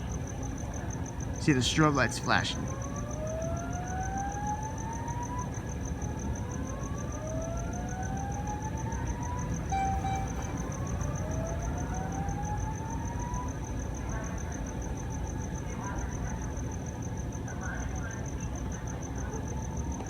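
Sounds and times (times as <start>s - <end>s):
fire alarm whoop: 6.4s - 13.5s
high-pitched pulsing beep: 9.7s - 11.5s.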